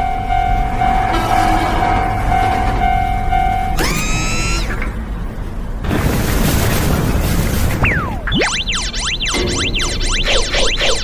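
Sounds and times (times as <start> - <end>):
railroad crossing signal ringing: 0.0 - 3.9.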